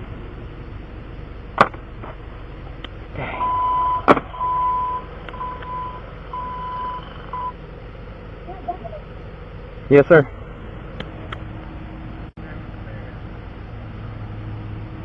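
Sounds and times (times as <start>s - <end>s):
electronic beeping: 3.4s - 7.6s.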